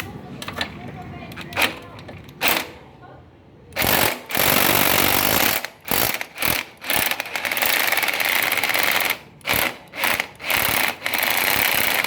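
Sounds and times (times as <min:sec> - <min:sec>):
impact driver rattling in bursts: 0:01.4 - 0:02.8, 0:03.8 - 0:12.0.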